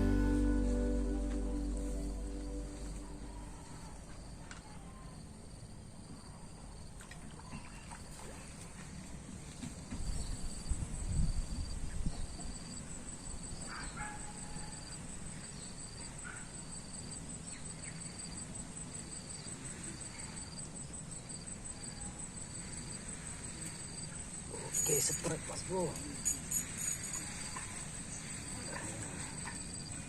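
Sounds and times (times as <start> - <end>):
low rumble: 0.0 - 3.7
insect high pulsing trill: 0.0 - 3.9, 19.1 - 30.0
insect short chirps: 19.4 - 30.0.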